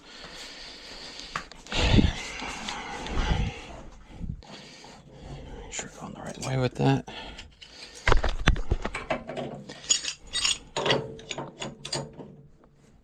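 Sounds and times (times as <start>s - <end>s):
wrench clicking and scraping metal: 9.0s - 12.2s.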